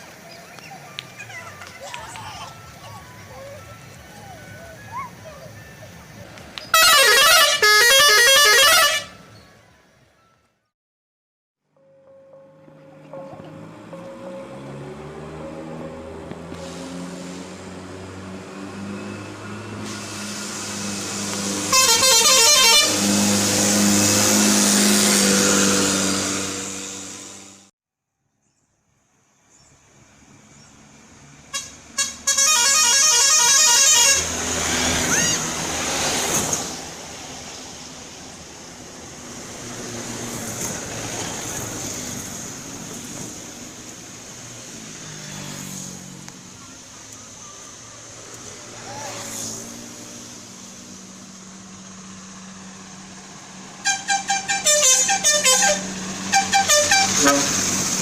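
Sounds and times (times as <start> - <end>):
bus engine: 0.0 - 10.6, 12.2 - 27.7, 28.5 - 58.0
musical air horn tune: 6.7 - 9.3, 20.3 - 24.3, 31.5 - 34.6, 53.8 - 57.9
vehicle passing by: 12.6 - 27.7, 29.6 - 58.0.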